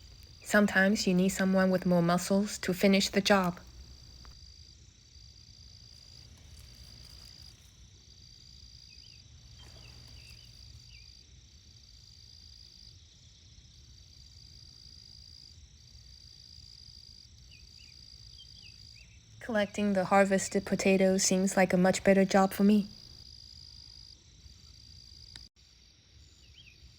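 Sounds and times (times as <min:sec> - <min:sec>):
insects trilling: 0:00.0 - 0:26.9
faint bird chirps: 0:26.2 - 0:26.9.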